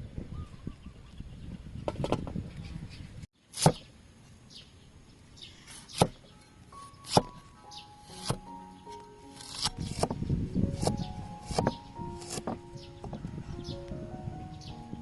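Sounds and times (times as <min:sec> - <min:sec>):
knife chopping on cutting board: 0:07.1 - 0:07.3, 0:08.1 - 0:08.4, 0:09.4 - 0:10.2, 0:10.8 - 0:12.6.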